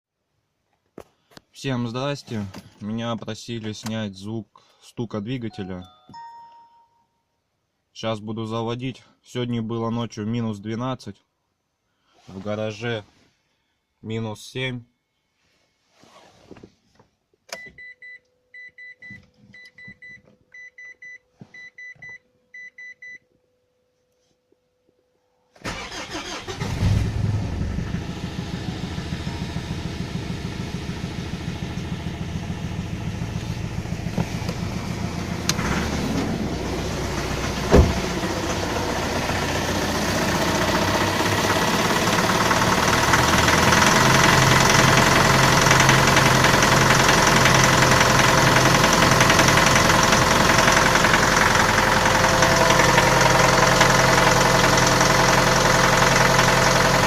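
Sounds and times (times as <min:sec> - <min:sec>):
short electronic beeps: 0:05.4 - 0:07.2
engine cranking and starting: 0:25.6 - 0:28.6, 0:34.1 - 0:57.0
engine idling with rapid knock: 0:37.6 - 0:57.0.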